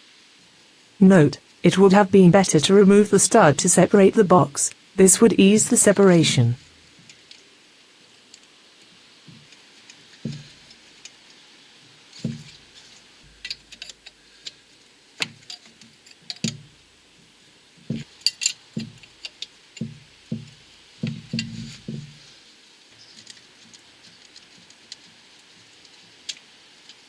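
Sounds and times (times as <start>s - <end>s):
spanners clinking on nuts: 13.3s - 14.2s, 15.2s - 16.8s, 17.9s - 22.3s.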